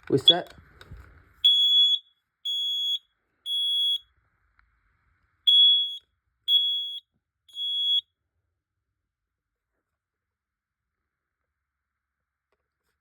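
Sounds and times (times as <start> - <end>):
smoke alarm beeping: 1.4 - 4.1, 5.5 - 8.1.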